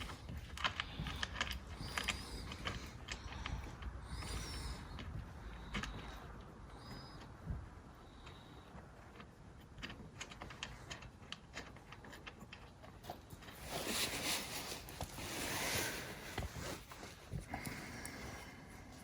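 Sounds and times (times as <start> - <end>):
plastic scraping rustle: 9.8 - 18.7.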